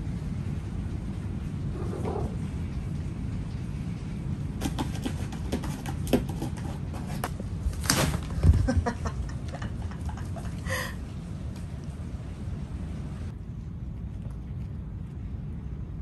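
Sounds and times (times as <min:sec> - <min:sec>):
typhoon wind and rain: 0:00.0 - 0:04.6, 0:06.8 - 0:13.9.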